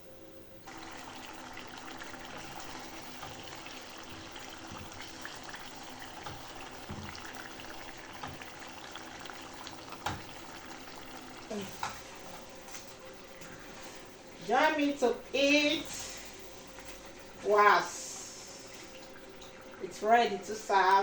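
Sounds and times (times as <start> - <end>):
food sizzling in oil: 0.7 - 21.0.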